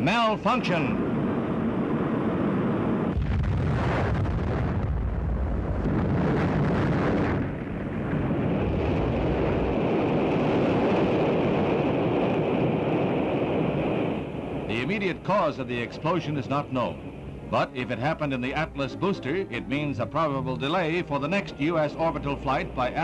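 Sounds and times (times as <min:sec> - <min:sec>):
rocket explosion rumbling: 0:01.6 - 0:14.7.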